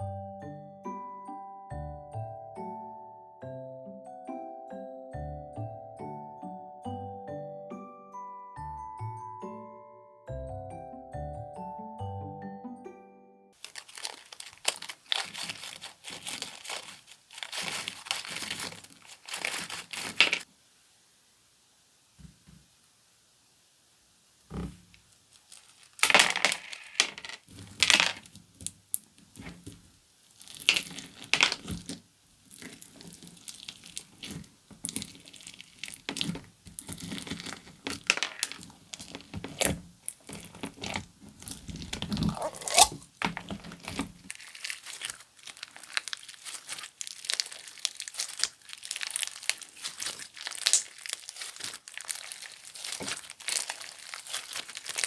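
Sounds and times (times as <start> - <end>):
slime crackling pops: 30.4 - 55.0.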